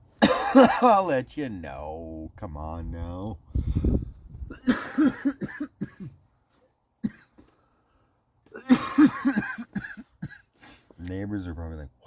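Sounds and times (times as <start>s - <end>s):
man coughing: 0.2s - 1.0s, 4.5s - 6.2s, 7.0s - 7.5s, 8.5s - 10.5s.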